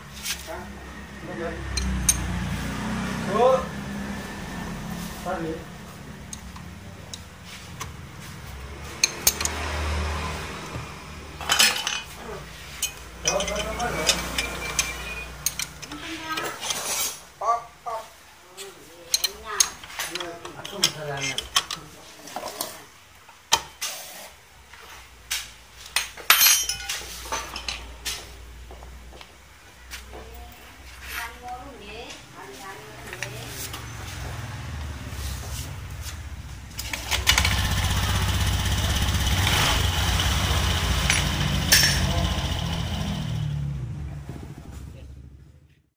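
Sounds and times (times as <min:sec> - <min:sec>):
metal tools clinking on hard surface: 0:01.7 - 0:02.4, 0:08.9 - 0:09.7, 0:11.4 - 0:17.2, 0:19.1 - 0:21.8, 0:25.9 - 0:28.0, 0:41.0 - 0:42.2.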